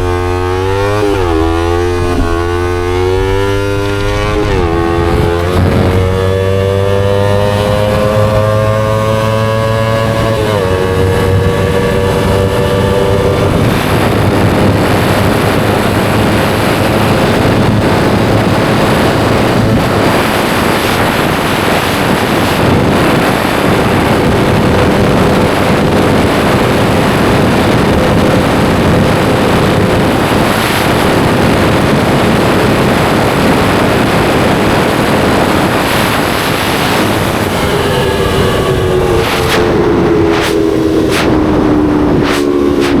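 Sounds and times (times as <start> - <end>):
motorcycle engine accelerating: 0.0 - 43.0
wind rush on microphone: 0.0 - 43.0.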